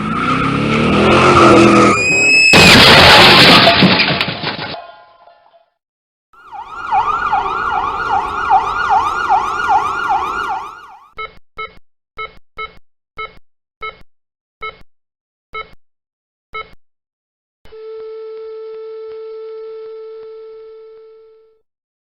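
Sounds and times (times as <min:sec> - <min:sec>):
emergency siren wailing: 0:00.0 - 0:02.5, 0:06.4 - 0:11.1.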